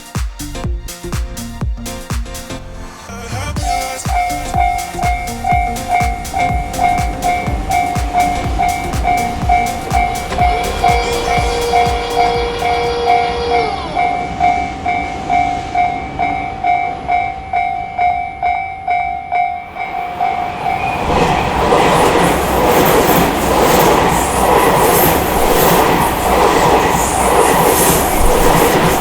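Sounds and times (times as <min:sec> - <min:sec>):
train wheels clattering on rails: 0:03.6 - 0:13.2, 0:19.8 - 0:29.0
railway crossing bell ringing: 0:03.6 - 0:21.0.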